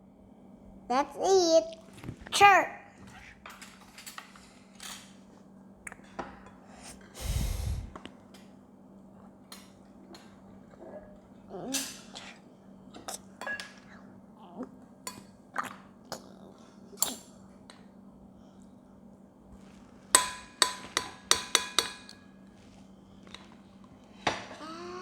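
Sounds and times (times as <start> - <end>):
utensils clinking against dishes: 3.4 - 5.3, 11.7 - 12.3, 12.9 - 14.0, 20.2 - 22.4.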